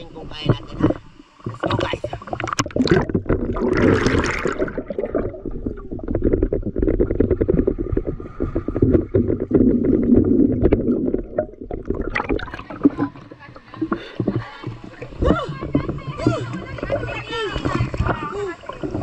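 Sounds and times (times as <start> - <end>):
water splashing around raft: 0.0 - 19.0.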